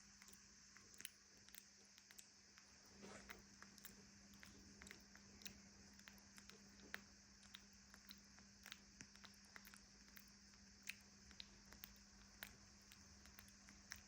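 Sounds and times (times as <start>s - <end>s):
steady low hum: 0.0s - 14.0s
soft rustle: 2.6s - 5.3s.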